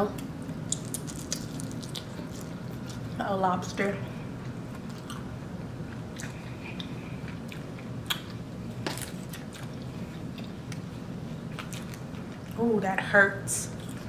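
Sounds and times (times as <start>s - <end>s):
steady low hum: 0.0s - 14.0s
soft chewing: 0.2s - 3.2s, 4.2s - 12.6s, 13.7s - 14.0s.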